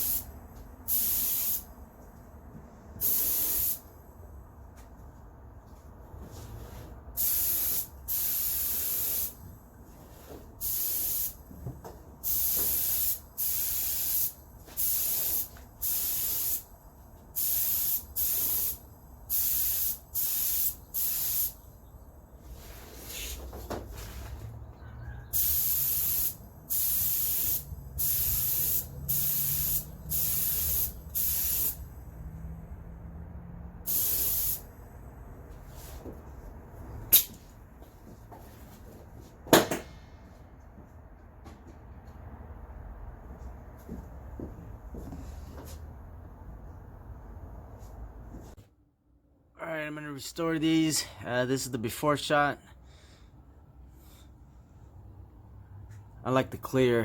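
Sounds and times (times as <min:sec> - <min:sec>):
spray hissing bursts: 0:00.0 - 0:00.3, 0:00.9 - 0:01.7, 0:03.0 - 0:03.9, 0:07.2 - 0:09.4, 0:10.6 - 0:11.4, 0:12.2 - 0:16.7, 0:17.4 - 0:21.6, 0:25.3 - 0:31.9, 0:33.9 - 0:34.7.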